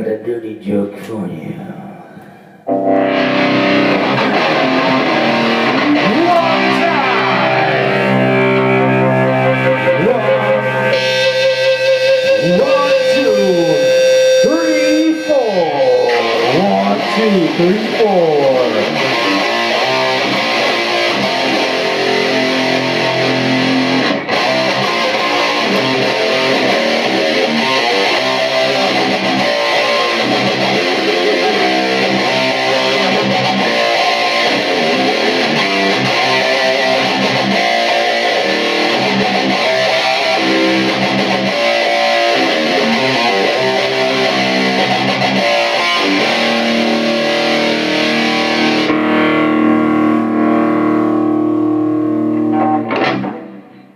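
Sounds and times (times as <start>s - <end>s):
distorted electric guitar: 1.6s - 53.9s
band playing rock instrumental: 2.7s - 53.6s.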